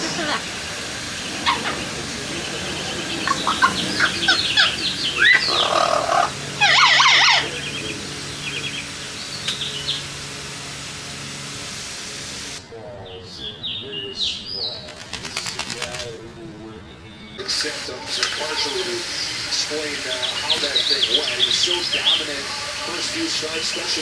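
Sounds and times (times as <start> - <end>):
parrots calling and squawking: 0.0 - 10.3
spray hiss: 18.7 - 24.0.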